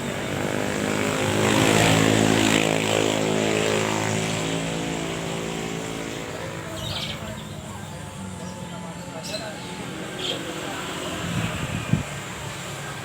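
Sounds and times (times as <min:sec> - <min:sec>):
passing engine drone: 0:00.0 - 0:13.0.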